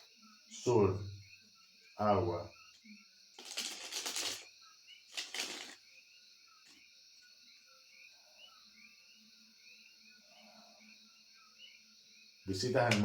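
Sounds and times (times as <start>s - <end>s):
cards rustling: 3.4s - 4.5s, 5.1s - 5.8s.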